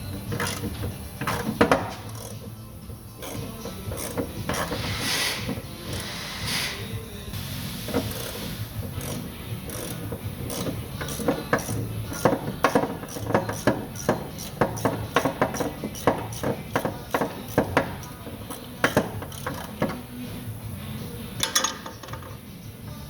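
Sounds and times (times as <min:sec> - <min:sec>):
socket wrench clicking: 0:00.1 - 0:02.6, 0:03.2 - 0:06.4, 0:07.9 - 0:20.1, 0:21.4 - 0:22.4.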